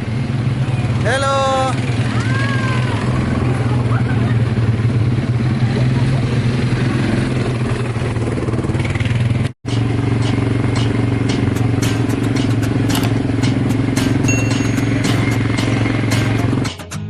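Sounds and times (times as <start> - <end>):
atv engine running: 0.0 - 17.0
sharp clicks and rattles: 10.2 - 14.1.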